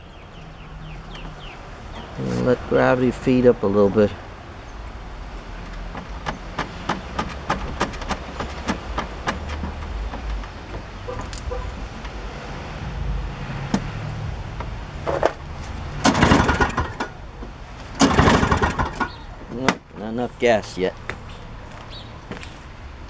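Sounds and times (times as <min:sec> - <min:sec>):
engine turning over: 0:10.4 - 0:19.7
recoil starter pulled: 0:13.6 - 0:19.9.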